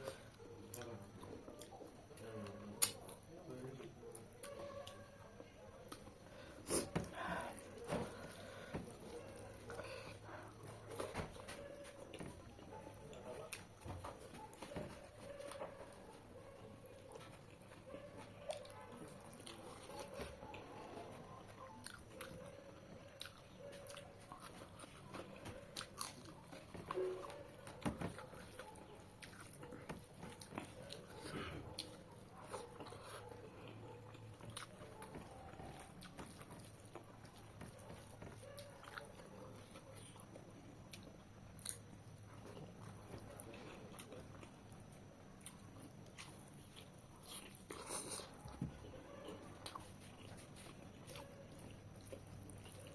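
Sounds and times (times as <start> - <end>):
person chewing and biting: 23.2 - 27.4, 40.9 - 41.8, 45.4 - 48.6.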